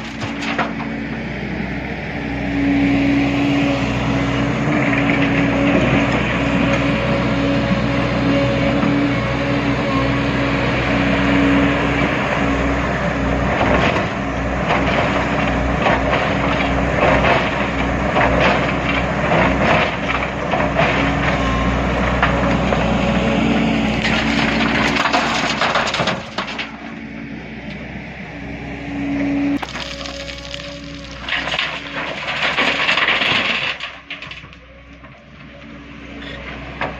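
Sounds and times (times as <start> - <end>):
excavator diesel engine running: 0.0 - 36.9
rocks knocking and crashing: 13.5 - 21.5, 24.0 - 27.0, 29.6 - 34.7.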